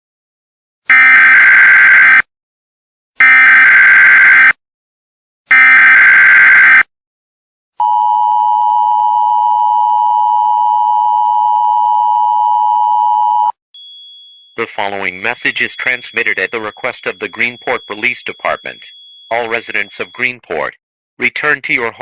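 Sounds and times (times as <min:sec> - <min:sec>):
screeching data bursts: 0:14.6 - 0:20.3
two-tone attention signal: 0:14.6 - 0:20.3.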